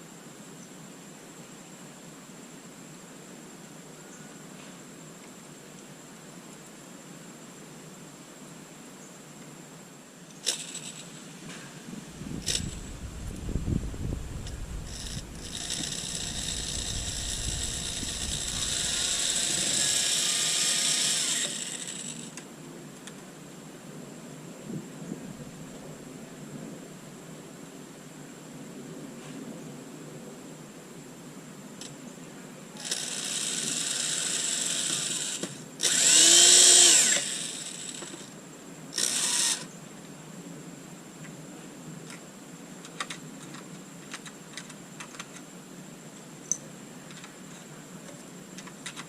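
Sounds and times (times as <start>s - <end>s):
power drill driving a screw: 14.9s - 22.4s, 32.8s - 38.3s, 39.0s - 39.7s.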